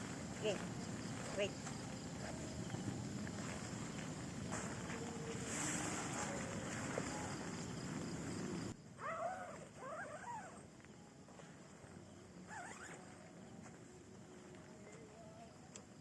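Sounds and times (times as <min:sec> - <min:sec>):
animal calls: 0:09.0 - 0:10.7.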